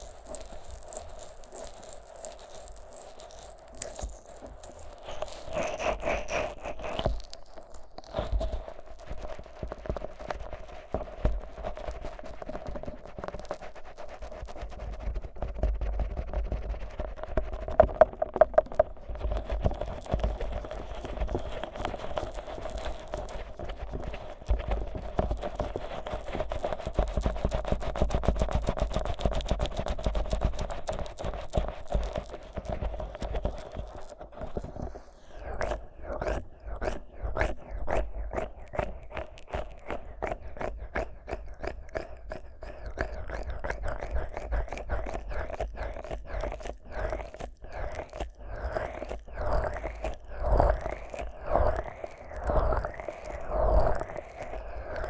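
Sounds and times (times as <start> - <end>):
wet sticky clicks and crackles: 0.0 - 15.0, 17.1 - 55.0
sticky fingers rubbing microphone: 0.3 - 55.0.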